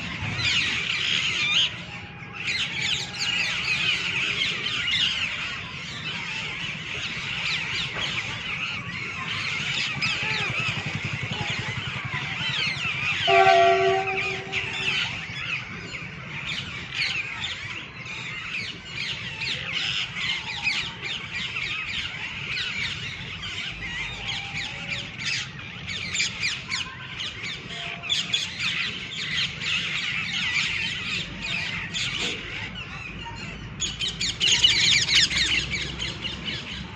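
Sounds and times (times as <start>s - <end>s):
parrots squawking and chirping: 2.4s - 15.6s.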